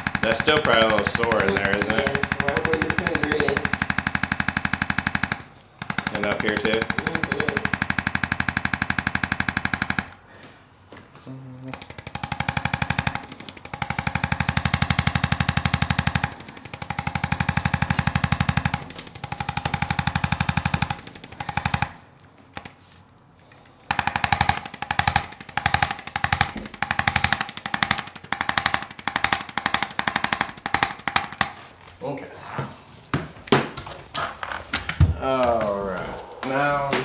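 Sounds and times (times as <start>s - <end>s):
percussion massager hammering: 0.0s - 10.3s, 11.7s - 31.9s.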